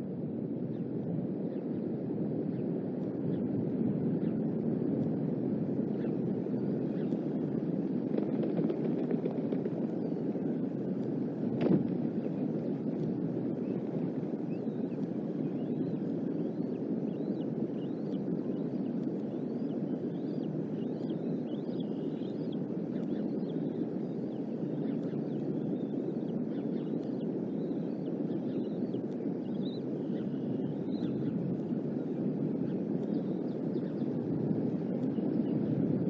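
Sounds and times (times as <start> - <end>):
strong wind buffeting microphone: 0.0 - 36.0
faint high bird chirps: 12.0 - 36.0.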